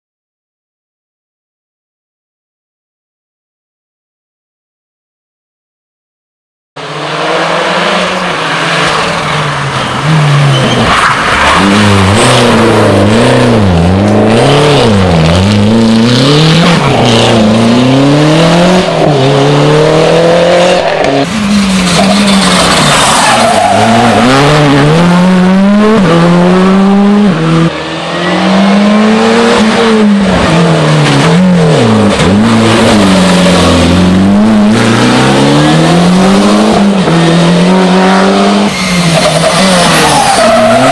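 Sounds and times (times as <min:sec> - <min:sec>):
rally car engines revving: 0:06.8 - 0:40.9
tyre squeal: 0:10.3 - 0:11.8, 0:21.3 - 0:24.5, 0:38.6 - 0:40.9.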